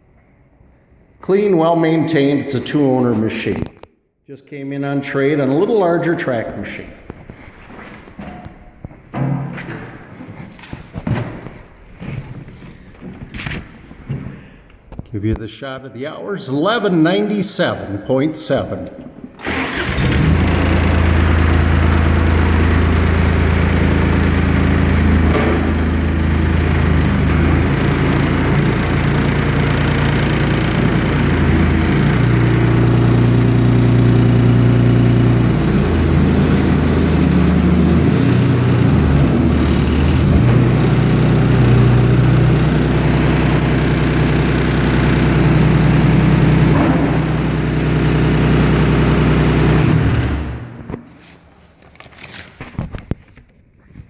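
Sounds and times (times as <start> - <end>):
diesel engine revving: 19.4 - 50.8.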